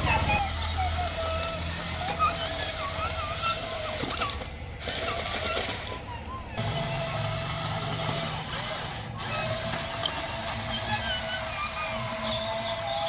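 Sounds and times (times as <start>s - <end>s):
electric motors whining: 0.0s - 13.0s.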